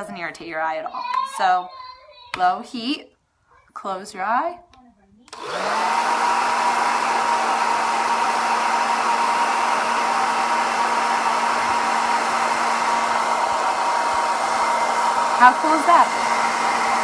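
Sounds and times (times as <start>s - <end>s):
blow dryer running: 5.3s - 17.0s.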